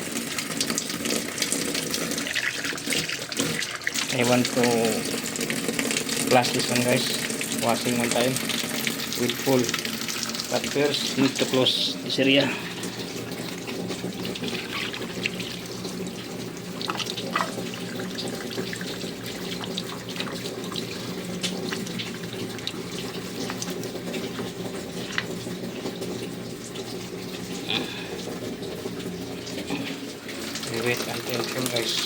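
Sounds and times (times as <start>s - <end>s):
washing machine low hum: 0.0s - 32.0s
water pouring into drum: 0.0s - 32.0s
small water splashes: 12.4s - 32.0s.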